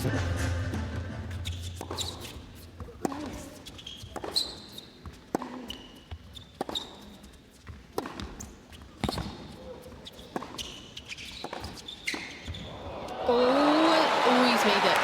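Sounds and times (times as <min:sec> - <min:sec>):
tennis racket strikes: 0:00.2 - 0:05.8, 0:08.0 - 0:09.5
tennis ball bounces: 0:01.3 - 0:12.7
shoes squeaking on court: 0:01.3 - 0:12.9.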